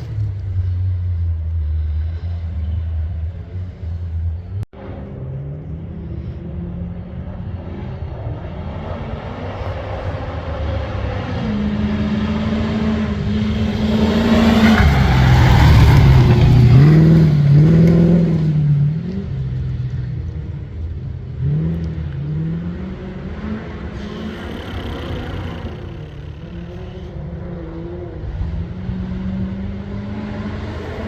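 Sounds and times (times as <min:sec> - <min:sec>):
four-wheel drive engine revving: 0:05.4 - 0:31.0.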